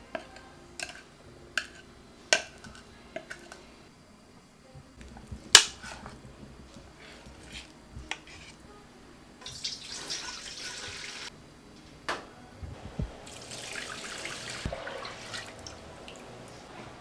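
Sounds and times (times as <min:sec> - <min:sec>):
water running from tap: 0:09.4 - 0:11.3, 0:13.3 - 0:16.3.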